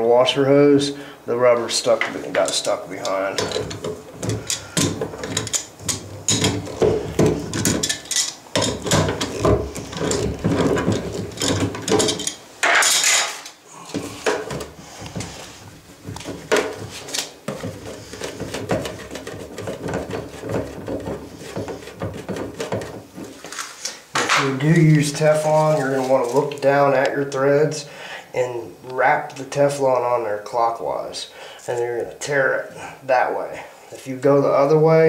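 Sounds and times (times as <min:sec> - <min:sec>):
hand tools clicking and scraping: 0:01.9 - 0:27.2.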